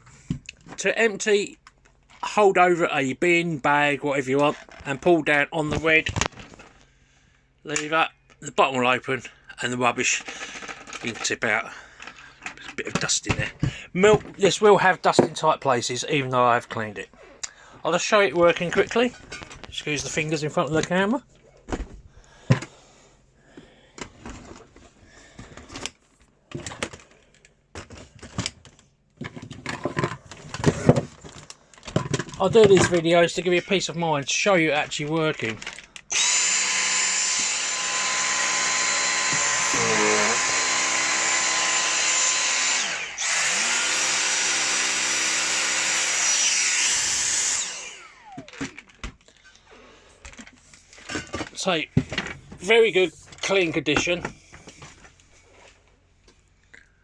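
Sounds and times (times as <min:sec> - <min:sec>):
handling knocks and clicks: 0:23.6 - 0:33.1
vacuum cleaner motor whine: 0:36.1 - 0:48.8.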